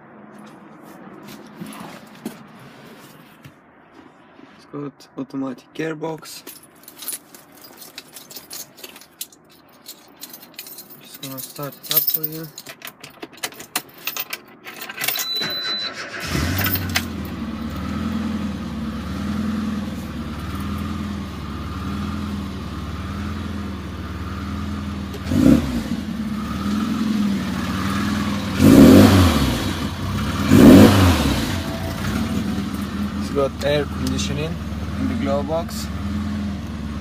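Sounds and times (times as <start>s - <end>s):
car engine idling and revving: 15.3s - 37.0s.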